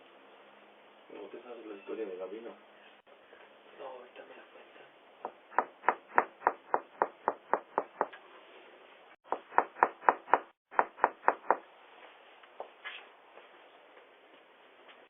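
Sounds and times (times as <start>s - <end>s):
knocking on a door: 5.2s - 8.1s, 9.2s - 11.6s.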